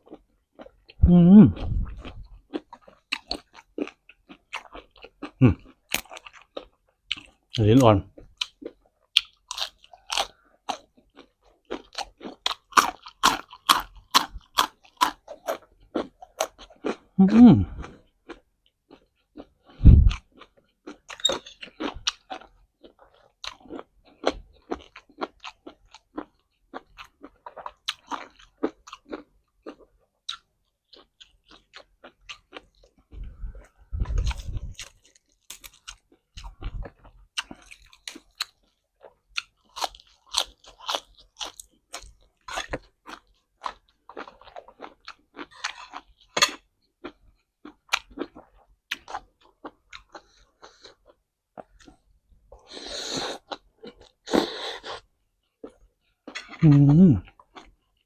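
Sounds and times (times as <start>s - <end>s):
dull low thumps: 1.1s - 2.2s, 19.8s - 20.2s, 33.1s - 34.8s
crunchy chewing: 1.6s - 7.6s, 8.4s - 58.0s.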